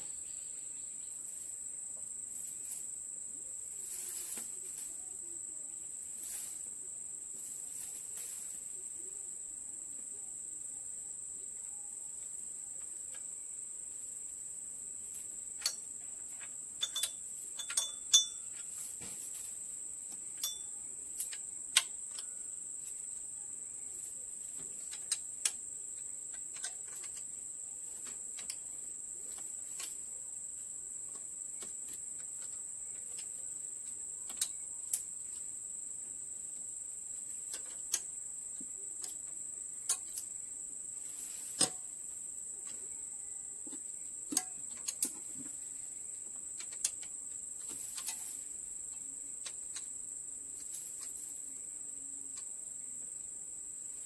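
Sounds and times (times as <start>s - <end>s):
hand tools tapping metal: 15.6s - 19.4s, 20.1s - 22.4s, 43.7s - 45.6s.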